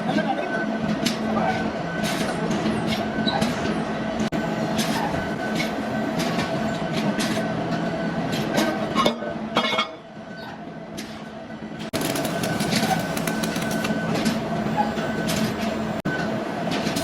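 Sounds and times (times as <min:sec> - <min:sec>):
machine humming: 0:11.9 - 0:14.3.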